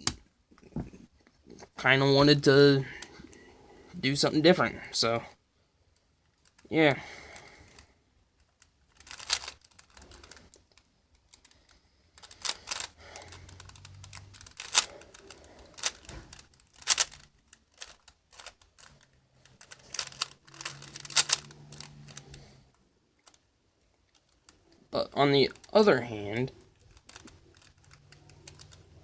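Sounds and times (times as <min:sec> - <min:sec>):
plastic puzzle cube clicking: 0:08.4 - 0:11.6, 0:12.2 - 0:22.4, 0:25.5 - 0:25.8, 0:26.6 - 0:29.0.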